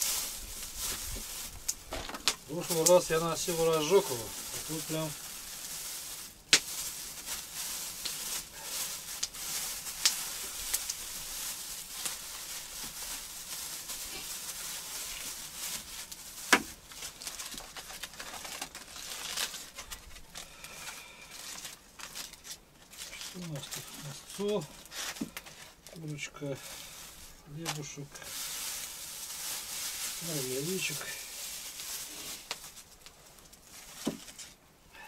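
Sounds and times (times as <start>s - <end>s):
campfire crackling: 0.0s - 17.9s
crinkling rustles: 0.0s - 34.6s.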